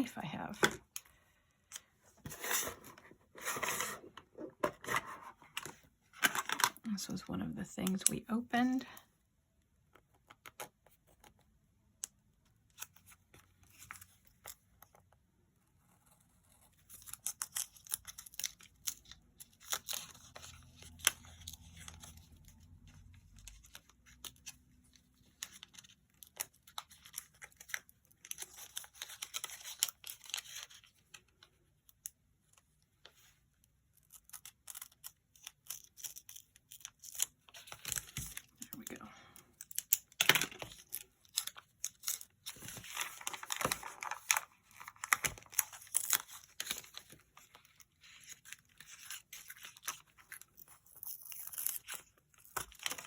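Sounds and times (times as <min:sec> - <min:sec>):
paper wrapping crinkling and ripping: 0:40.3 - 0:53.0.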